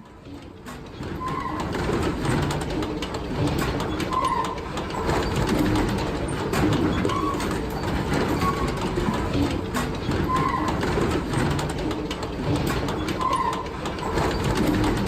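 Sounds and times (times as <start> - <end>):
machinery clattering: 0.0 - 15.0
short high squeak: 7.0 - 8.8.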